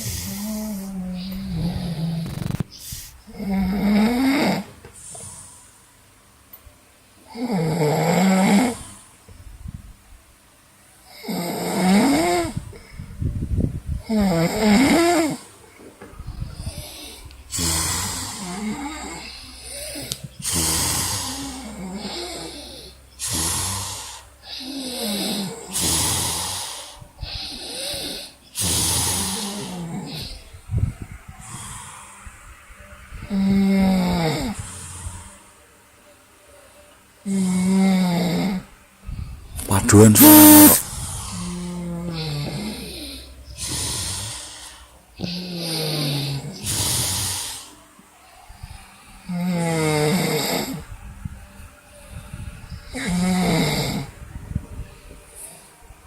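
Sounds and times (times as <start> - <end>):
loud rasping snoring: 0.0 - 4.7, 7.3 - 8.9, 14.1 - 15.4, 17.6 - 26.9, 27.5 - 30.3, 45.2 - 47.7, 53.0 - 54.1.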